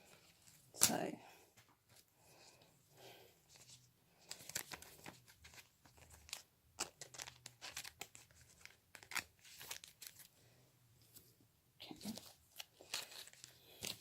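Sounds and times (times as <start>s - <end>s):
foil wrapper crinkling and tearing: 4.2s - 10.3s, 12.1s - 14.0s.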